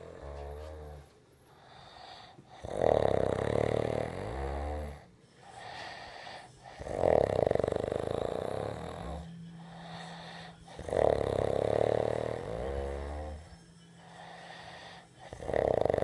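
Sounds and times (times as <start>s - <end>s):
person snoring loudly: 0.0s - 1.1s, 2.5s - 16.0s
quiet breaths: 0.0s - 16.0s.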